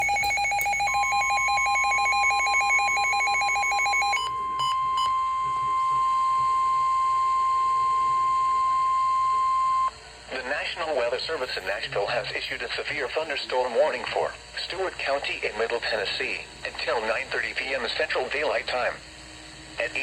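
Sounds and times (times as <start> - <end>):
rapid electronic alert beeping: 0.0 - 5.1
steady high alarm tone: 0.0 - 10.0.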